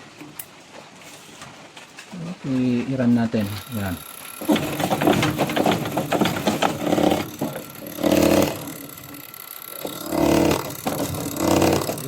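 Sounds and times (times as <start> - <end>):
diesel injector rapid clicking: 3.4 - 12.0
injector buzzing bursts: 6.8 - 12.0.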